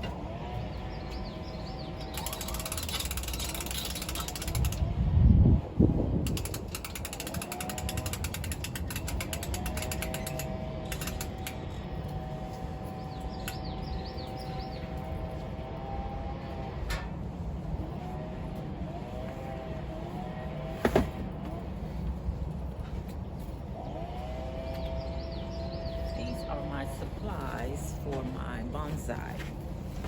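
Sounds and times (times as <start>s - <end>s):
rapid mechanical clicking: 2.0s - 4.8s, 6.2s - 11.7s.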